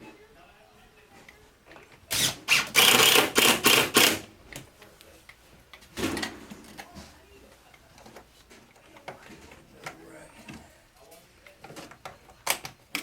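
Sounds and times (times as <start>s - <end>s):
power screw gun bursts: 2.1s - 4.2s.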